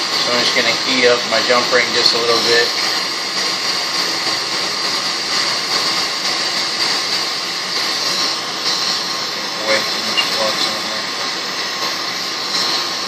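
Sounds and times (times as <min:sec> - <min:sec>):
torch flame hissing: 0:00.0 - 0:13.0.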